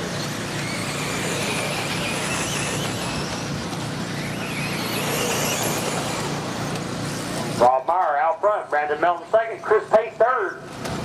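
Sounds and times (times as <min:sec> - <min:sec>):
radio-controlled car motors whining: 0:00.0 - 0:08.0.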